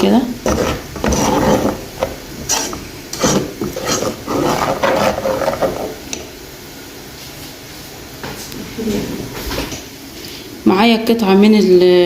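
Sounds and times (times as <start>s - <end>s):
spoon stirring and scraping pot: 0.3s - 6.2s.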